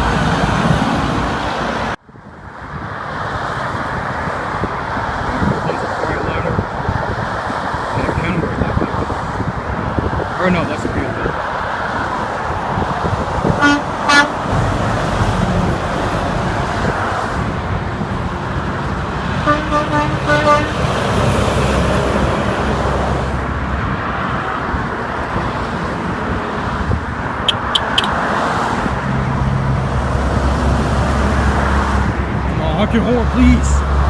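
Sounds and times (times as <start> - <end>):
highway traffic passing: 0.0 - 34.0
truck engine drone: 13.3 - 26.5
vehicle horns honking: 13.6 - 14.6, 19.4 - 20.9, 27.5 - 28.2
sharp clicks: 27.5 - 28.2.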